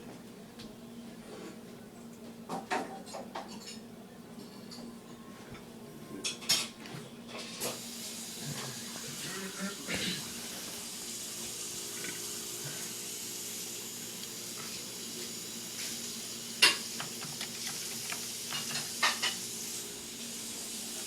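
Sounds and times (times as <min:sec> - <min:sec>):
steady hiss: 0:07.7 - 0:21.0.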